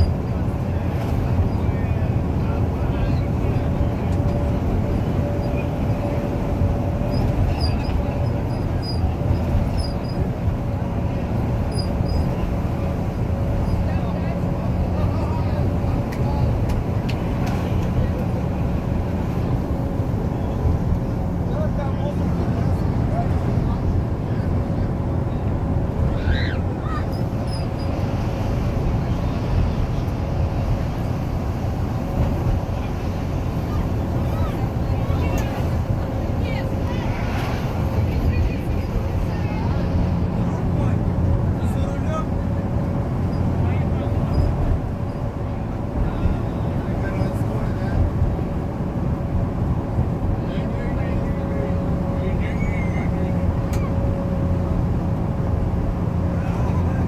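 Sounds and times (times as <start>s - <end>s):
train wheels rumbling on rail: 0.0s - 57.0s
high-pitched wheel squeaks: 26.2s - 28.0s.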